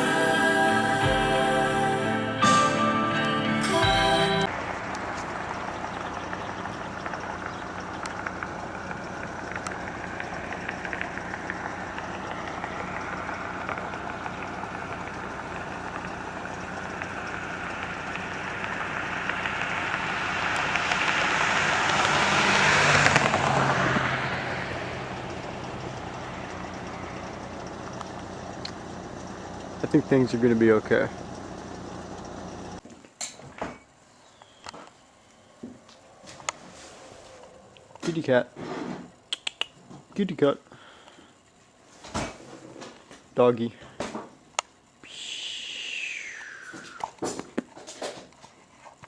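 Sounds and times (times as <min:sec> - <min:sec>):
road traffic noise: 0:00.0 - 0:32.9, 0:34.0 - 0:49.0
vehicle passing close by: 0:04.4 - 0:28.0.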